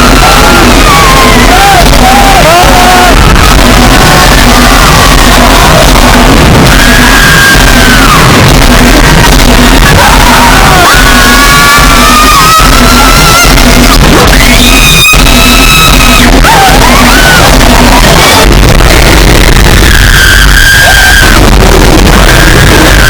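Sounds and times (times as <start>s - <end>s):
high-pitched voices shouting: 0.0s - 6.8s
loud distorted music: 0.0s - 23.0s.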